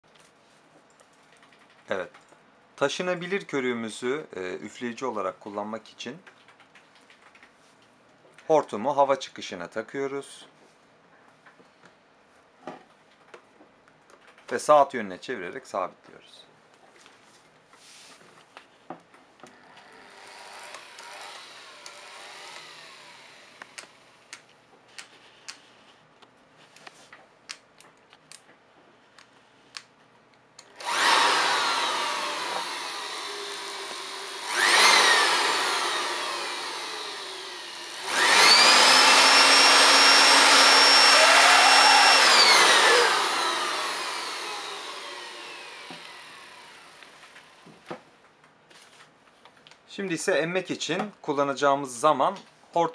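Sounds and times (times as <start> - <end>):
electric blower running: 20.1 - 23.8, 30.8 - 47.6.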